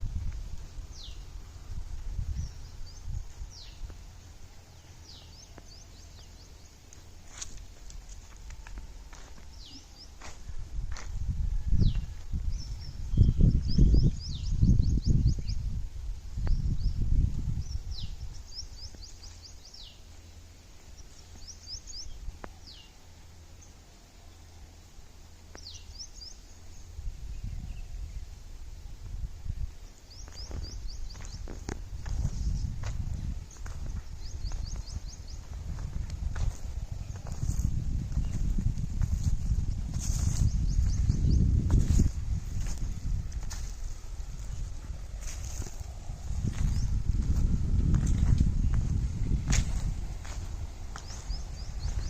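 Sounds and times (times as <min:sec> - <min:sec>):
birds calling and chirping: 0:00.6 - 0:11.1, 0:16.4 - 0:24.8, 0:29.5 - 0:52.0.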